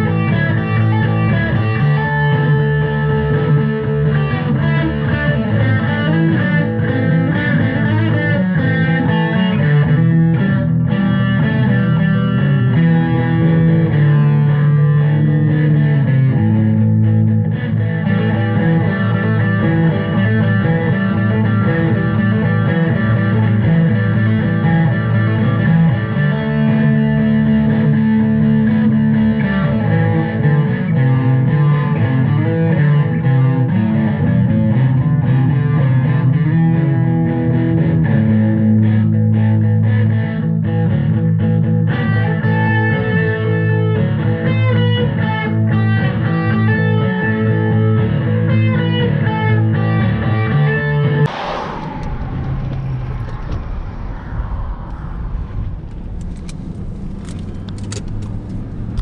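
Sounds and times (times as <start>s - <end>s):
rock music with guitars: 0.0s - 52.0s.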